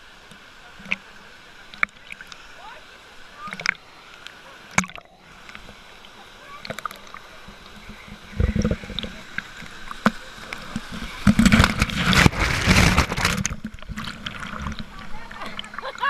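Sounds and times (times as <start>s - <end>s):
water splashing: 0.0s - 16.0s.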